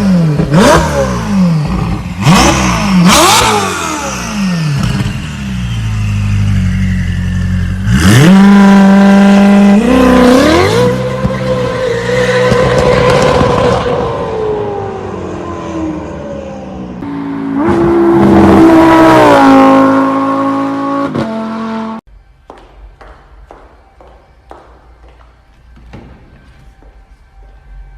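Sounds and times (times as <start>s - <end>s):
car engine revving: 0.0s - 22.0s.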